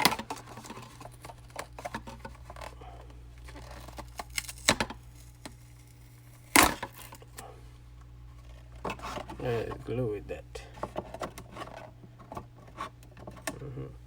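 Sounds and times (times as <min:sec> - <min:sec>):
hands handling packaging: 0:00.0 - 0:07.5.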